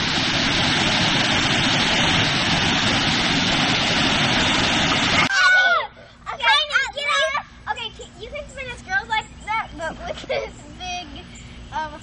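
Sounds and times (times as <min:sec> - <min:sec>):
waterfall rushing: 0:00.0 - 0:05.3.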